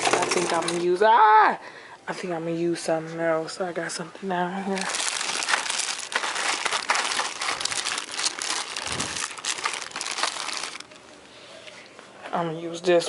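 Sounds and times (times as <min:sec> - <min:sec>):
crinkly plastic rustling: 0:04.7 - 0:11.2.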